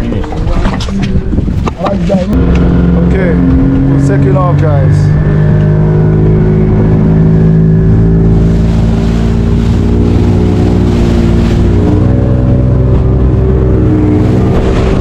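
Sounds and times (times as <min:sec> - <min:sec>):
boat motor running: 0:00.0 - 0:15.0
rushing water and wind: 0:05.1 - 0:15.0.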